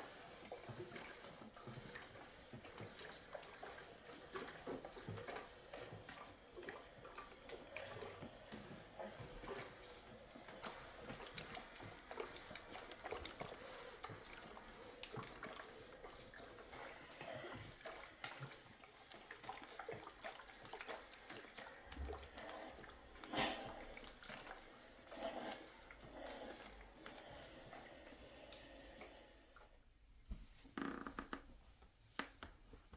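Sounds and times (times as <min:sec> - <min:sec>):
faint watery sound: 0:00.0 - 0:31.4.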